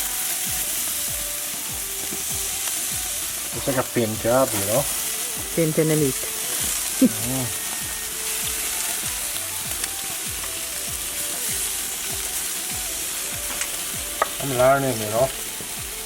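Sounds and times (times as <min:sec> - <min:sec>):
crackles and pops: 0:00.0 - 0:16.0
meat sizzling on grill: 0:00.0 - 0:16.0.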